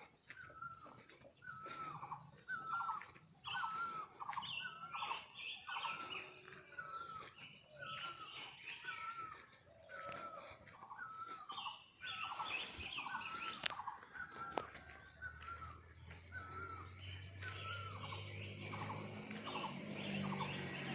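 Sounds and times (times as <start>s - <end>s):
higher bird chirps: 0.0s - 20.9s.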